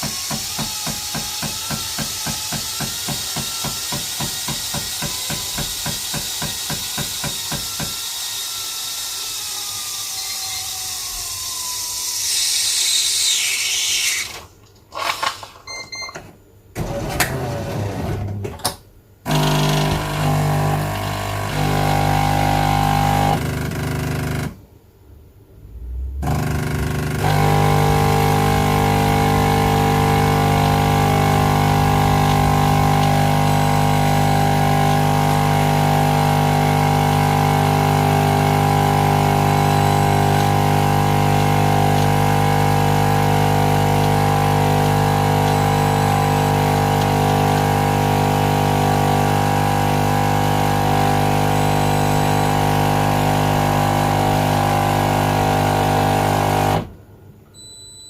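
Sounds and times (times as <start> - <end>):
coffee machine motor humming: 19.3 - 24.1, 26.2 - 56.8.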